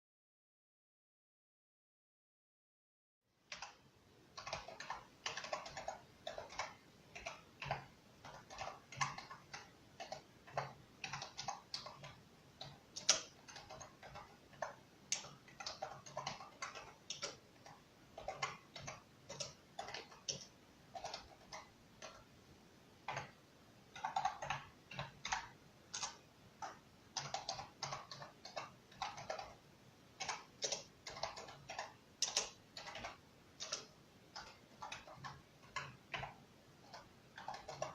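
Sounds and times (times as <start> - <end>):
keyboard key clicks: 30.2 - 37.9.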